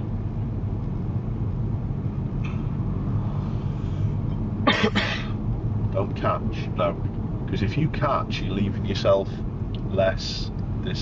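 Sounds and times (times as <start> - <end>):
car engine rumble and road noise: 0.0 - 11.0
person coughing: 4.7 - 5.4.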